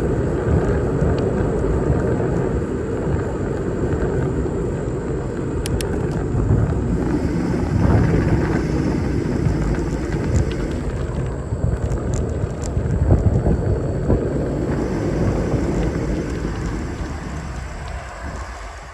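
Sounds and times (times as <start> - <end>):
bicycle tyre road noise: 0.0 - 18.9
wind buffeting microphone: 0.0 - 18.9
light ticks: 5.6 - 6.2.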